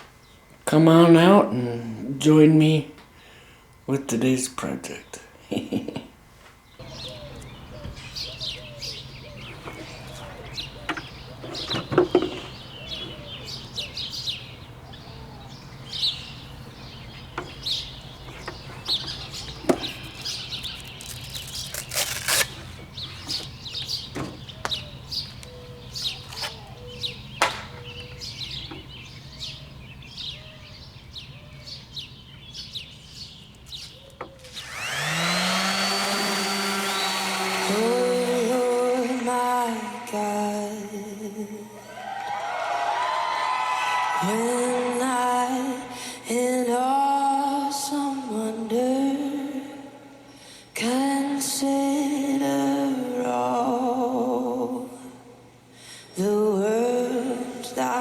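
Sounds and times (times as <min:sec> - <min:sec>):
small birds chirping: 0:04.9 - 0:40.6.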